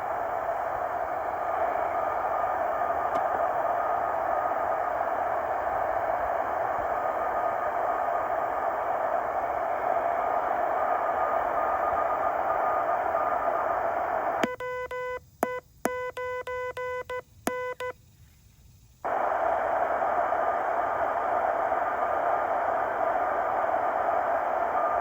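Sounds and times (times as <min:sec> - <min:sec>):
radio receiver hiss: 0:00.0 - 0:14.6, 0:19.0 - 0:25.0
faint steady whistle: 0:00.0 - 0:18.0, 0:19.0 - 0:25.0.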